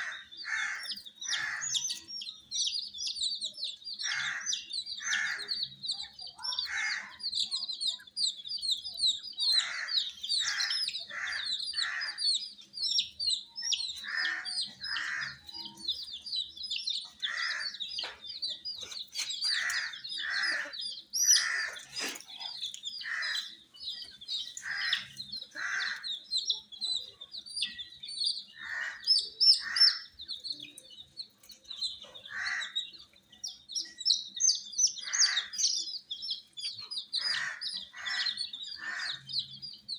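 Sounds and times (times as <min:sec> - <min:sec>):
baby chicks peeping: 0:00.0 - 0:39.9
louder lower chick calls: 0:04.0 - 0:07.5, 0:09.2 - 0:18.6, 0:19.3 - 0:26.7, 0:28.4 - 0:30.6, 0:32.2 - 0:33.0, 0:33.7 - 0:39.6.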